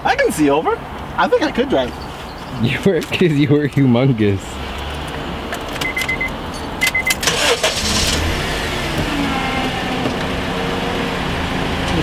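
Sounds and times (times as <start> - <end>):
car engine starting and idling: 4.4 - 12.0
car warning chime beeping: 5.8 - 7.8.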